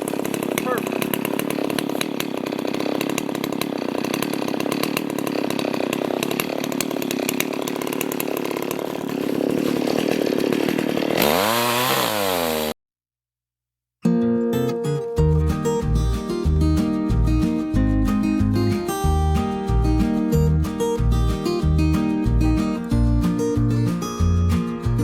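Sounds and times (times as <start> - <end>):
chainsaw cutting wood: 0.0 - 12.8, 15.6 - 25.0
acoustic guitar music: 14.0 - 25.0.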